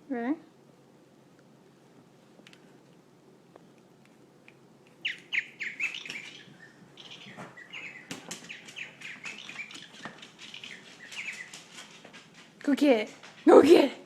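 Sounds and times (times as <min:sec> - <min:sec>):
bird chirping: 0:04.9 - 0:12.3.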